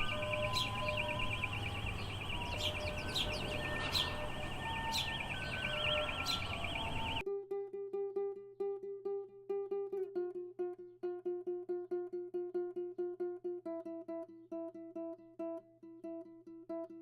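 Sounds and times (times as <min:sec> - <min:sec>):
plucked ukulele music: 0:00.0 - 0:01.2, 0:07.2 - 0:17.0
birds chirping: 0:00.0 - 0:07.2
high fast-warbling trill: 0:00.0 - 0:07.2
soft held tones: 0:00.0 - 0:07.2.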